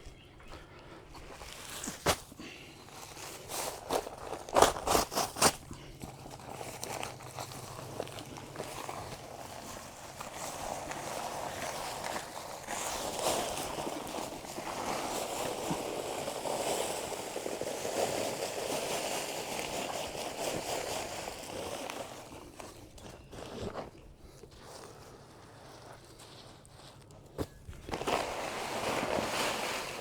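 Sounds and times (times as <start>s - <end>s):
dry concrete mix pouring: 27.8s - 30.0s.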